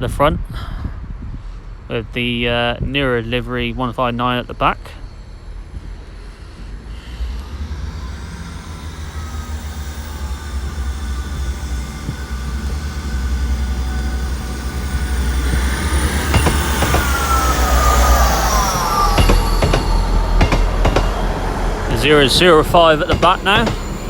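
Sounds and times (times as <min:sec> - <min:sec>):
diesel train engine rumble: 0:00.0 - 0:24.0
high steady whine: 0:01.2 - 0:24.0
wheels clicking over rail joints: 0:18.8 - 0:24.0.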